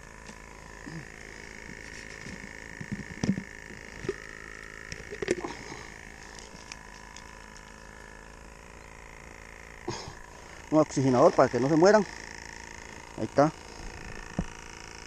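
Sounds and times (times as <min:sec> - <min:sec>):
steady hum: 0:00.0 - 0:15.0.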